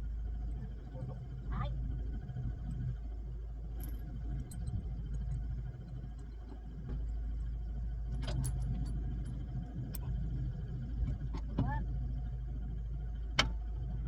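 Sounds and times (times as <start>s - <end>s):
steady low rumble: 0.0s - 14.0s
light metallic clinks: 3.6s - 10.2s.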